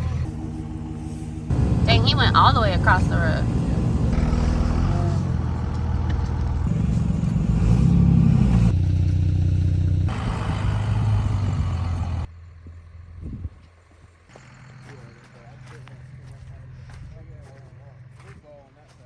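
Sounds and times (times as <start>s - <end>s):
vehicle engine revving: 0.0s - 12.3s.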